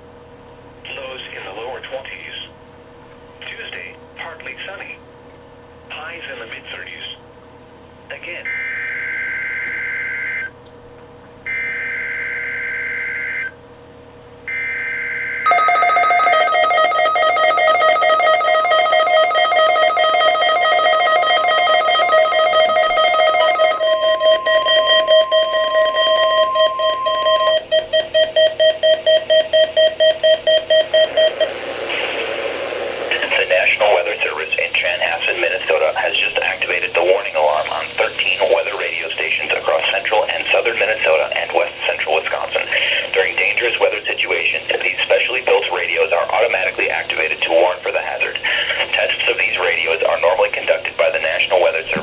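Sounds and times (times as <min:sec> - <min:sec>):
shrill electronic alarm tone: 0:14.5 - 0:27.6
screeching data tones: 0:15.5 - 0:27.1
second steady tone: 0:15.5 - 0:27.6.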